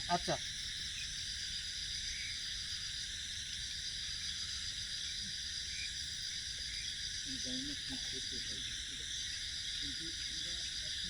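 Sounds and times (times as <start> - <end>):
crickets chirring: 0.0 - 11.0.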